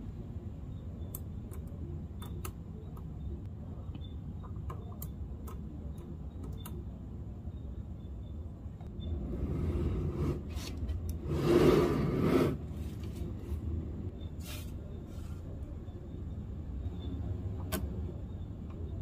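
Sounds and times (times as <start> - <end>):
magnetic balls rubbing scrape: 9.2 - 13.7.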